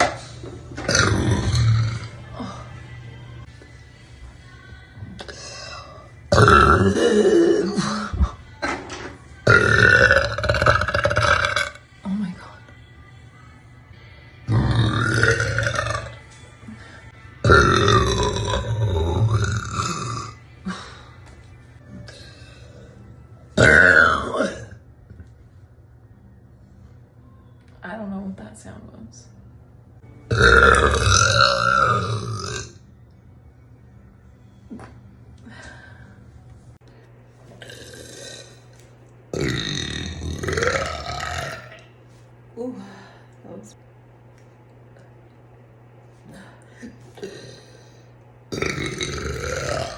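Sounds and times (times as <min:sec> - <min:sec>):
low steady hum: 0:00.0 - 0:49.9
woman burping: 0:00.8 - 0:02.6, 0:06.3 - 0:08.3, 0:09.5 - 0:11.8, 0:17.4 - 0:20.8, 0:23.6 - 0:24.8, 0:30.3 - 0:32.7, 0:37.6 - 0:38.6, 0:39.4 - 0:41.8, 0:46.8 - 0:47.8, 0:48.5 - 0:49.9.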